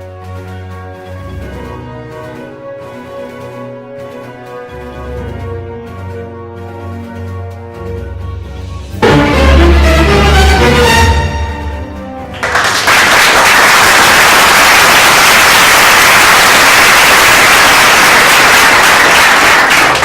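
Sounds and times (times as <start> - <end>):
music notes: 0.0 - 12.9.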